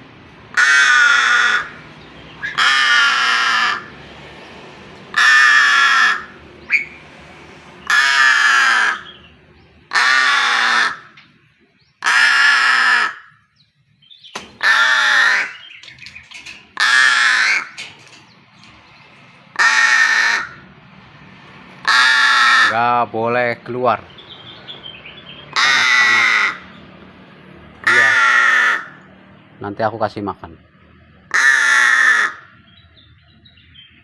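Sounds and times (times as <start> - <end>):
bird giving hoarse calls: 0.5 - 4.0, 5.1 - 7.0, 7.7 - 11.2, 12.0 - 13.6, 14.4 - 18.2, 19.4 - 20.7, 21.8 - 23.0, 24.1 - 26.8, 27.8 - 29.1, 31.2 - 32.8.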